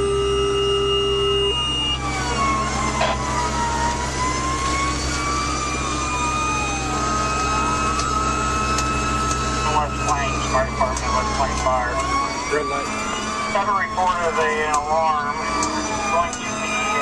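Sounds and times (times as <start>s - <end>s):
steady held tone: 0.0s - 3.3s
fire engine siren wailing: 0.0s - 17.0s
truck engine rumble: 0.0s - 17.0s.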